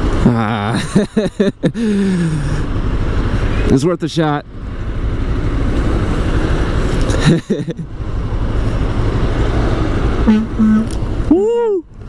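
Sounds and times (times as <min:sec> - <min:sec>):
motorcycle engine rumble: 0:00.0 - 0:12.0
truck air horn blasts: 0:10.2 - 0:11.0.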